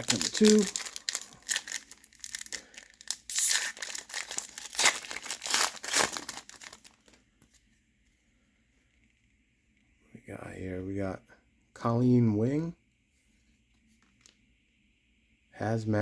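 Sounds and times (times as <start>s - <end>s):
wrapper being torn and crinkled: 0.0s - 7.2s.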